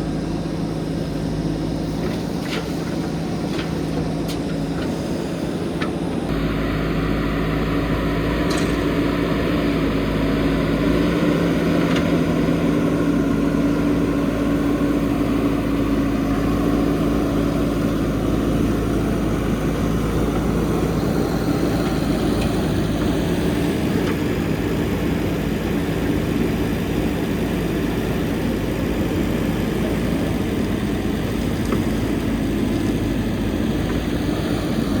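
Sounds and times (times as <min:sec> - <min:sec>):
diesel engine droning: 0:00.0 - 0:35.0.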